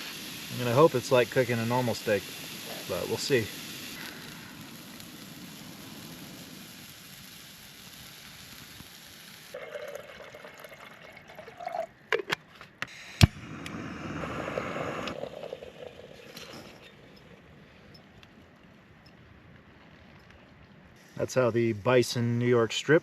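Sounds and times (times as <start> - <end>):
steak sizzling in a pan: 0.0 - 9.6.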